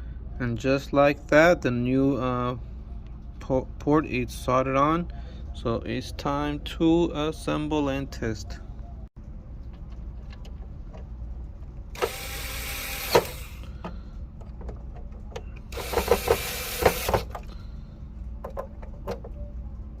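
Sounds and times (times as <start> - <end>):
electric screwdriver whirring: 12.0 - 13.7, 15.7 - 17.5.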